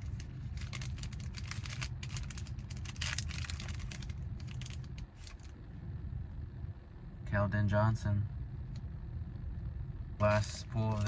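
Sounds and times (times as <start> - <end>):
trading cards rustling: 0.0 - 5.5, 10.2 - 11.0
steady low hum: 0.0 - 11.0.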